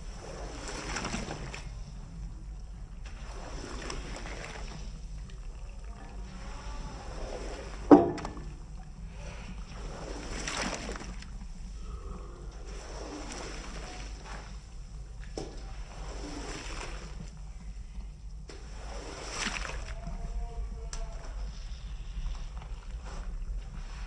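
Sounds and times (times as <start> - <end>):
water splashing and sloshing: 0.0 - 24.0.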